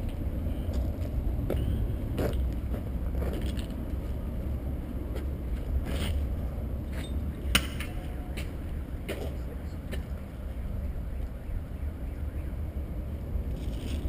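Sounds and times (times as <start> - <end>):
small clicks and scrapes: 13.5 - 14.0.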